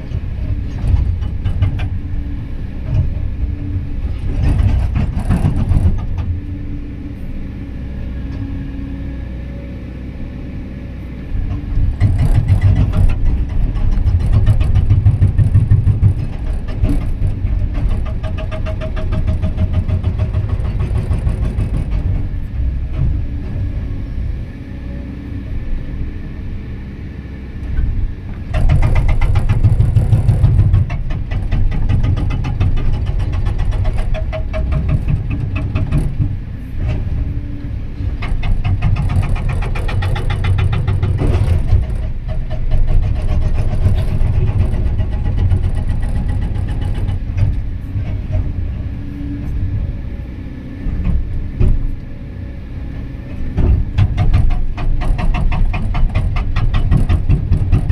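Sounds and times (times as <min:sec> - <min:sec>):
excavator engine running: 0:00.0 - 0:57.9
hydraulic rock breaker hammering: 0:00.1 - 0:06.5, 0:11.6 - 0:23.8, 0:27.7 - 0:48.7, 0:53.3 - 0:57.9.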